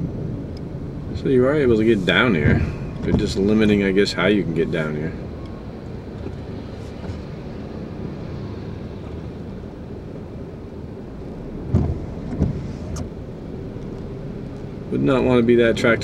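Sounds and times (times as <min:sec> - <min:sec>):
car engine and road noise: 0:00.0 - 0:16.0
short thumps: 0:02.3 - 0:03.7, 0:11.7 - 0:13.1.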